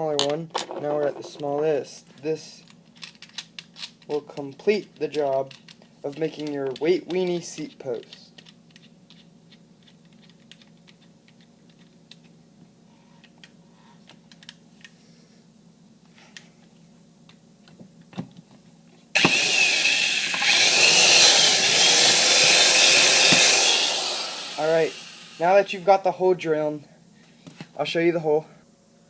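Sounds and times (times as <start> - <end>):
electric drill cutting metal: 19.2 - 25.7.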